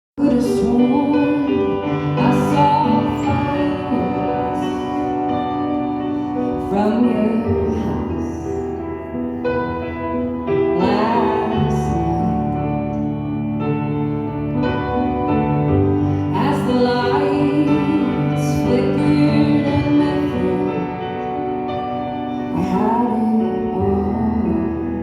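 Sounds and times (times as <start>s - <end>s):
person singing: 0.2s - 9.7s, 10.5s - 13.2s, 15.9s - 25.0s.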